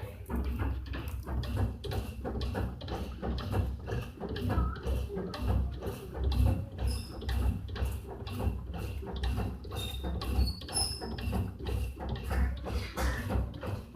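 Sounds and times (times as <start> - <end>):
washing machine churning: 0.0 - 13.9
high squeaks: 9.8 - 11.1.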